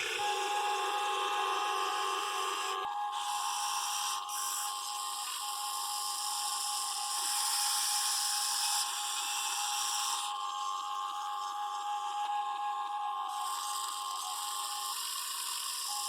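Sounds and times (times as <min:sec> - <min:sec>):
small electric motors whining: 0:00.0 - 0:16.0.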